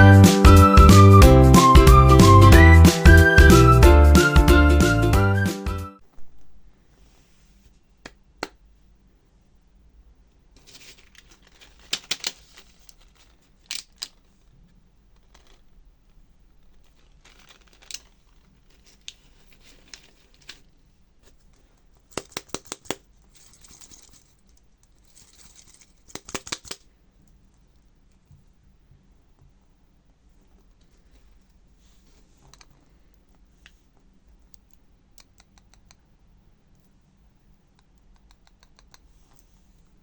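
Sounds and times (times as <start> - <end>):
wrapper crinkling and tearing: 10.6 - 14.2, 16.6 - 20.7
sharp clicks and taps: 22.1 - 23.0, 26.1 - 26.8, 34.5 - 36.0, 37.8 - 39.1.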